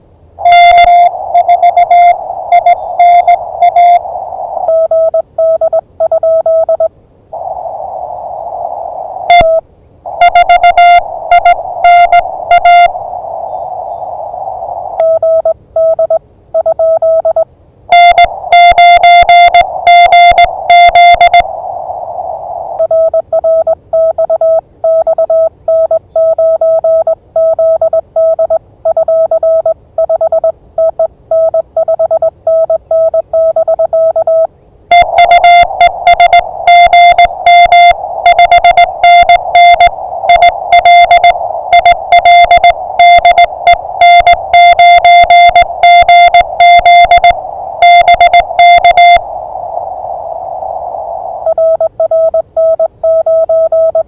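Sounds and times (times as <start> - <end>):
radio band noise hiss: 0.4 - 4.7, 7.3 - 15.1, 18.0 - 22.8, 34.9 - 51.6
morse code tone: 0.4 - 6.9, 9.3 - 13.2, 15.0 - 21.5, 22.8 - 50.1, 51.0 - 54.0.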